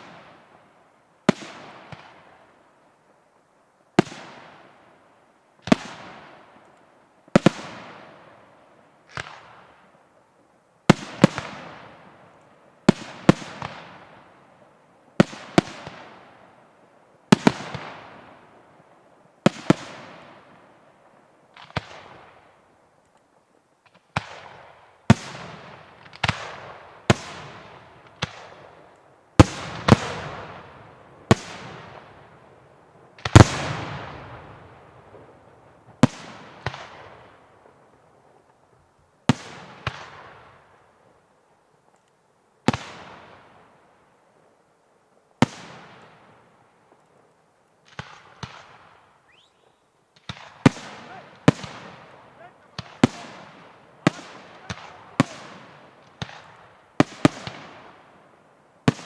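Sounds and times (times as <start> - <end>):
small firework pops: 9.1 - 9.8, 21.5 - 22.4, 23.0 - 30.6, 45.4 - 57.9.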